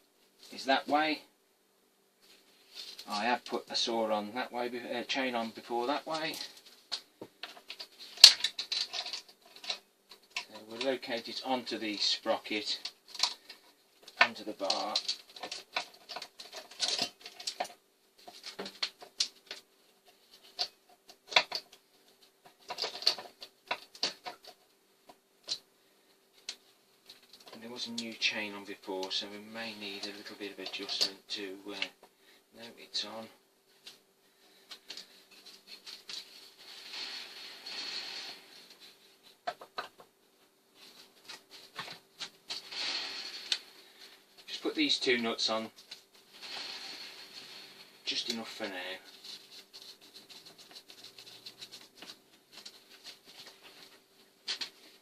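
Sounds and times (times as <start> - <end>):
scratchy metal scraping: 34.4 - 39.9, 40.8 - 54.0.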